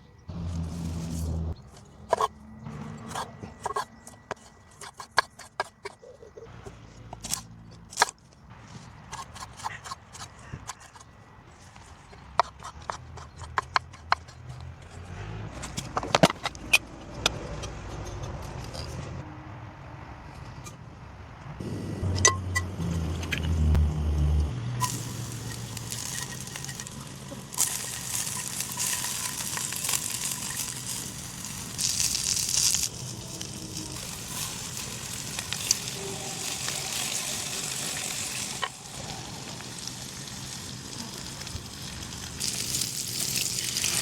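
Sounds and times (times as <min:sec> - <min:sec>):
low rumble: 0:00.3 - 0:01.6.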